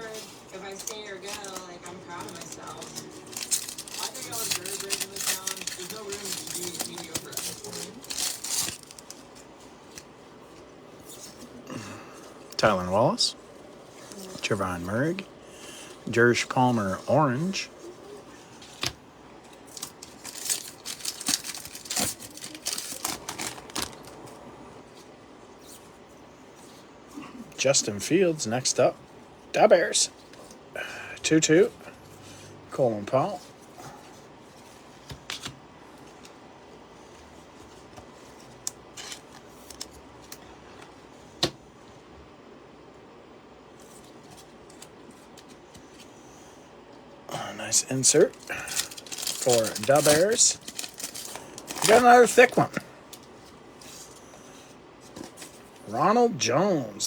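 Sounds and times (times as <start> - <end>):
foil wrapper crinkling and tearing: 0.0 - 10.1, 19.5 - 24.4, 47.9 - 52.8.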